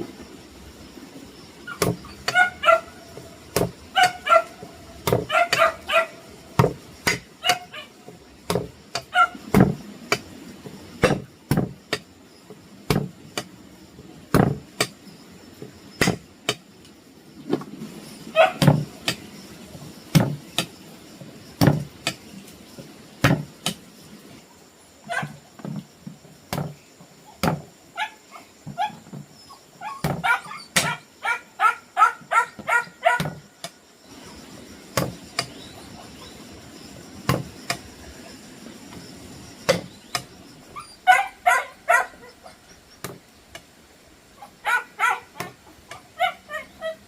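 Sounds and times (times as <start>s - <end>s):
sharp chopping knocks: 1.8s - 2.4s, 3.5s - 4.2s, 5.0s - 5.7s, 6.6s - 7.7s, 8.5s - 10.3s, 11.0s - 12.0s, 12.9s - 13.5s, 14.3s - 15.0s, 16.0s - 16.6s, 18.6s - 19.2s, 20.1s - 20.7s, 21.6s - 22.2s, 23.2s - 23.8s, 27.4s - 27.7s, 35.0s - 35.6s, 37.3s - 37.8s, 39.7s - 40.3s.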